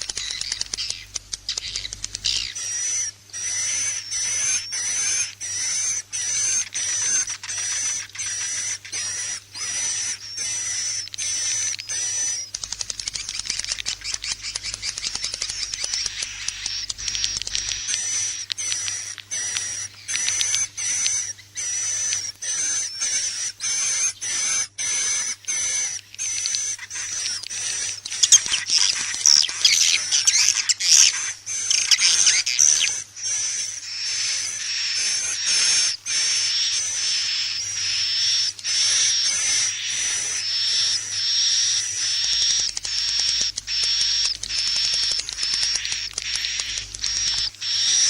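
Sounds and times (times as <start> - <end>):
swiftlets chirping: 0.0 - 48.0.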